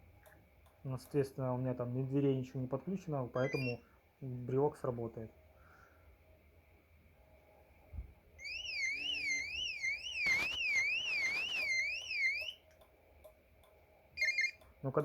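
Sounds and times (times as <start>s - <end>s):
car alarm siren wailing: 3.4s - 3.8s, 8.4s - 12.6s, 14.2s - 14.6s.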